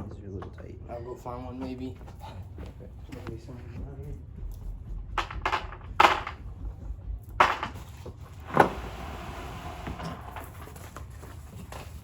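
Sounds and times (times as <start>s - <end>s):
knocks of hard objects: 5.1s - 6.6s, 7.3s - 8.8s.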